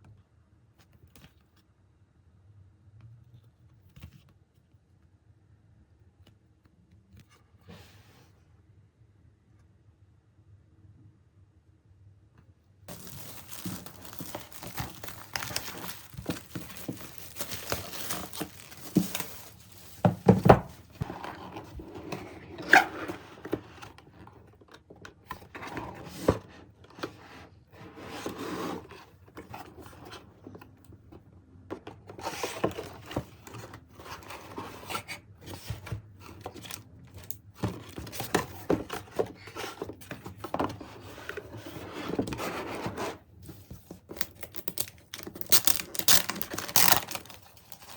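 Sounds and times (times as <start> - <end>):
handling rustling and scraping: 12.9 - 47.9.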